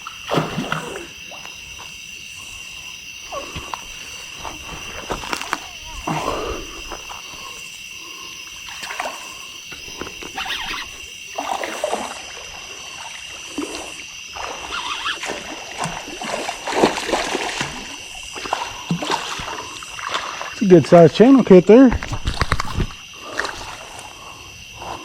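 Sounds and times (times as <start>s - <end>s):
fish splashing in water: 8.7s - 20.6s.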